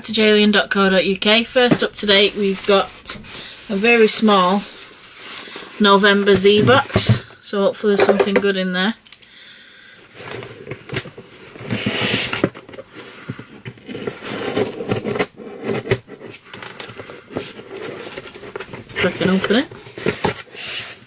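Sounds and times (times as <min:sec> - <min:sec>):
cardboard box being opened: 0:10.1 - 0:21.0.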